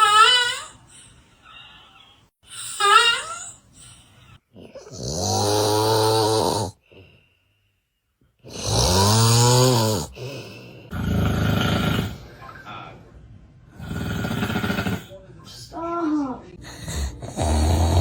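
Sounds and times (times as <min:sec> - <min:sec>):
person snoring: 0:02.5 - 0:03.9, 0:04.6 - 0:07.1, 0:08.4 - 0:12.3, 0:13.8 - 0:15.2, 0:16.6 - 0:18.0.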